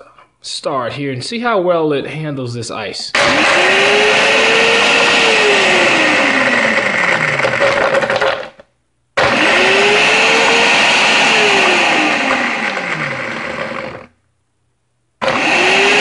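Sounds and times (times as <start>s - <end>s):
blender crushing ice: 3.2s - 8.6s, 9.2s - 14.1s, 15.2s - 16.0s.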